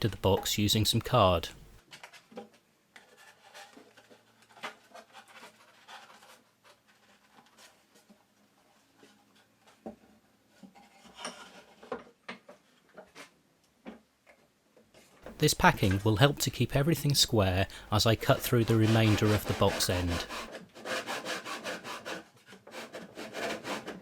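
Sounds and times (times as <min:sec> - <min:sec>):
card rubbing against wood: 0:15.3 - 0:20.5.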